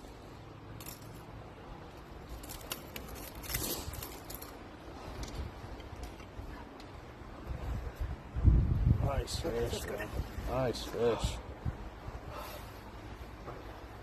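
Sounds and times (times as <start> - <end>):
clicks and rattles of small objects: 2.2 - 4.6.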